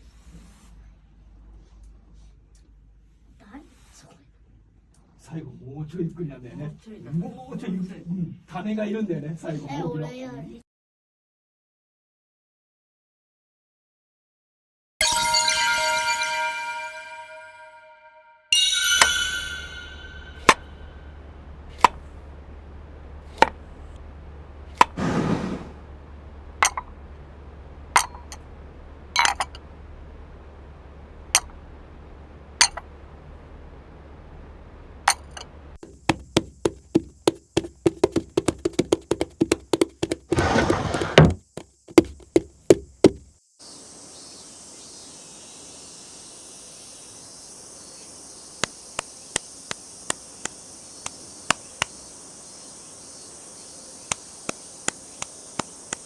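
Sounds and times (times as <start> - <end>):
sharp knocks and clinks: 18.6 - 21.0, 21.7 - 22.1, 26.6 - 27.3, 28.0 - 29.8, 31.4 - 31.7, 32.6 - 33.0, 35.1 - 43.3
steady high hiss: 42.5 - 56.0.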